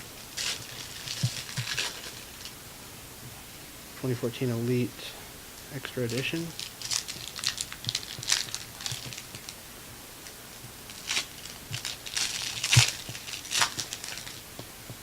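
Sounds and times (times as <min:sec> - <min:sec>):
cards rustling: 0:00.3 - 0:02.6, 0:05.9 - 0:09.6, 0:10.2 - 0:14.6
wrapper tearing and crinkling: 0:00.4 - 0:02.6, 0:06.4 - 0:09.6, 0:10.9 - 0:14.5.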